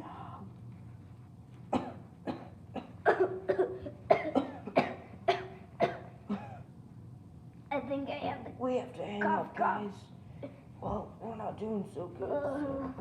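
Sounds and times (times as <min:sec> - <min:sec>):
boys coughing: 0:01.8 - 0:06.7.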